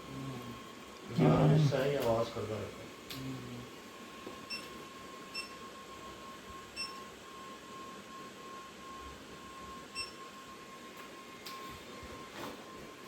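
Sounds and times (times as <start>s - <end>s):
faint high-pitched hum: 0.0s - 3.8s.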